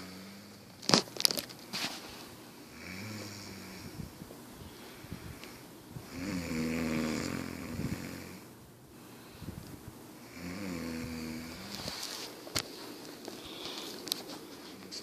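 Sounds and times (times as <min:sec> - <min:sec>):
woman snoring: 0:00.0 - 0:00.6, 0:02.7 - 0:04.0, 0:04.7 - 0:08.5, 0:10.2 - 0:12.1.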